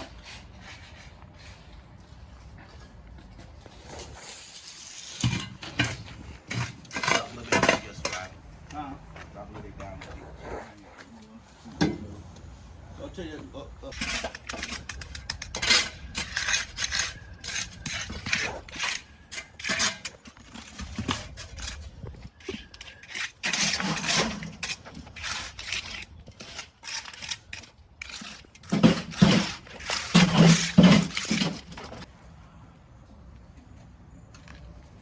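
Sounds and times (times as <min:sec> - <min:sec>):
hard objects clattering: 0:13.9 - 0:32.1.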